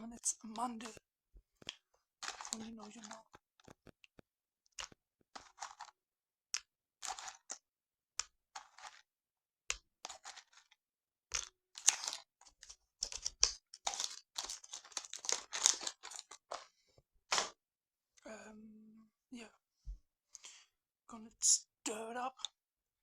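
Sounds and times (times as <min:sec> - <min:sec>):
packet rustling: 0:01.6 - 0:04.1, 0:04.8 - 0:06.0, 0:07.0 - 0:07.6, 0:08.6 - 0:09.0, 0:10.1 - 0:16.7, 0:17.3 - 0:17.6
nuts clicking into a bowl: 0:11.3 - 0:12.2.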